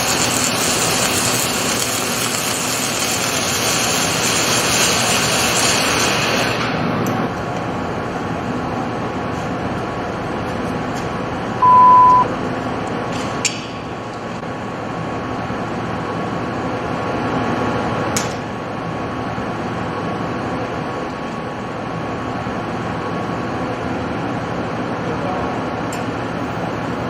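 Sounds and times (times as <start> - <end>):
welding machine running: 0.0 - 11.0
short high electronic beep: 11.6 - 12.3.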